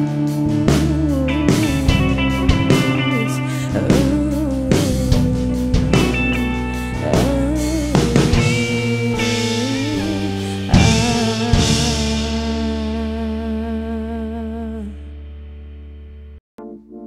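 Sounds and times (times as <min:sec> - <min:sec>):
bass: 0:00.0 - 0:16.9
wavering guitar notes: 0:00.0 - 0:17.0
drum hits: 0:00.8 - 0:13.4.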